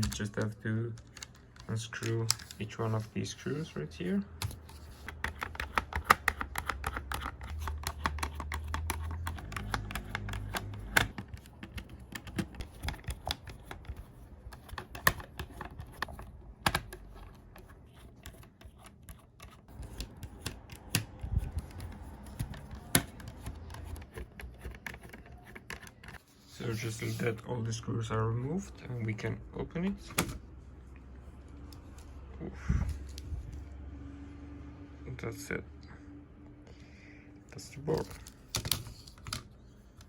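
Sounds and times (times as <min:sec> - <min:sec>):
keyboard knocking: 0:05.1 - 0:14.0
screwdriver clicking and tapping: 0:05.1 - 0:14.0.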